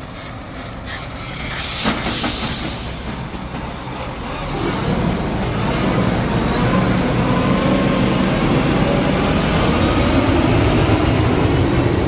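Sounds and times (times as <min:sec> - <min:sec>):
heavy vehicle engine rumbling: 0:00.0 - 0:12.0
air brake hiss: 0:01.5 - 0:03.2.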